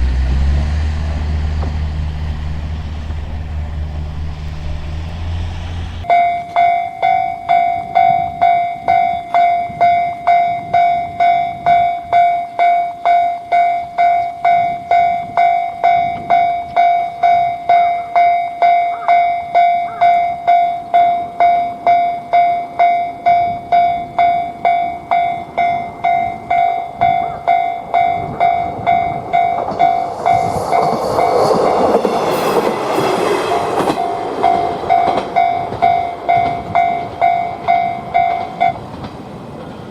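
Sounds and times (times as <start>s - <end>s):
train rumbling past: 0.0s - 6.4s, 20.9s - 39.9s.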